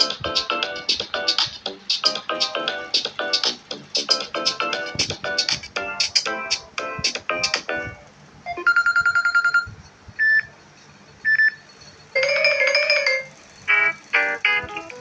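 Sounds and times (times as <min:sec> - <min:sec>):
phone ringtone tones: 0:08.5 - 0:09.7, 0:12.2 - 0:15.0.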